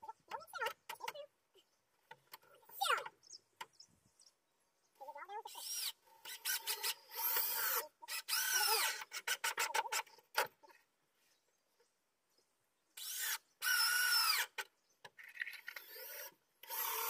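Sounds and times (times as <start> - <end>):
power drill whining: 5.6 - 9.4, 13.0 - 14.6, 15.6 - 17.0.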